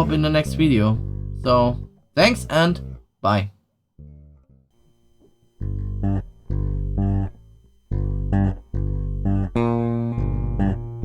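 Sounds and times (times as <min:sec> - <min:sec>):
bass and guitar chord stabs: 0:00.0 - 0:03.0, 0:05.3 - 0:11.0.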